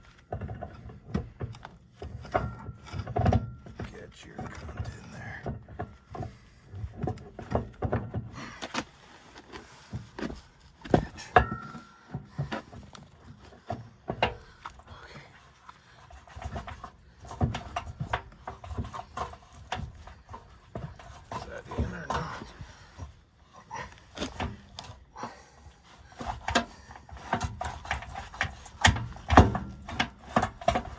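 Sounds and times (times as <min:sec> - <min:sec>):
metal chain clanking and rattling: 0:00.0 - 0:08.4, 0:09.8 - 0:14.5.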